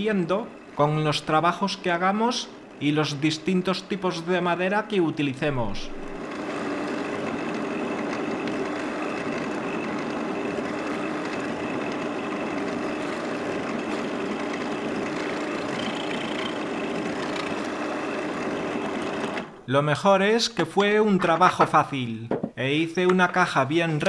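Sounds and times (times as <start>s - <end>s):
drill press motor humming: 5.5s - 19.7s.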